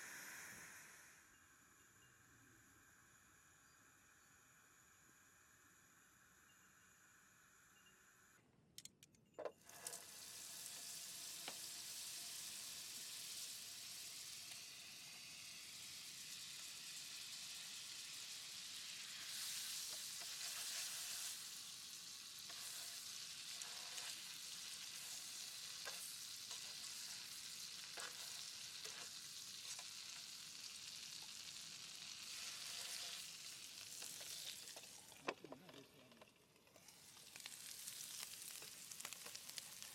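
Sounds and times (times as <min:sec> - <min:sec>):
food sizzling in a pan: 0:00.0 - 0:01.3, 0:09.6 - 0:36.1, 0:36.8 - 0:39.9
small clicks: 0:08.7 - 0:10.0.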